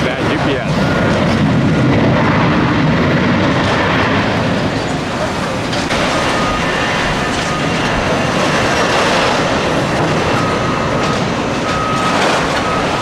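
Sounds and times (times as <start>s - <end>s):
bulldozer working: 0.0s - 13.0s
reversing alarm beeping: 0.6s - 1.4s, 4.8s - 13.0s.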